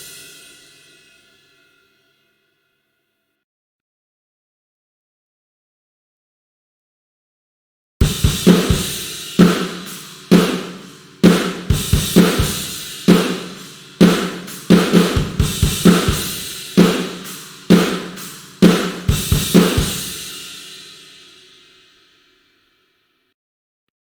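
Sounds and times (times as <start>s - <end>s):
rock drum kit groove: 0.0s - 0.5s, 8.0s - 21.6s
ringing cymbals: 8.7s - 22.1s.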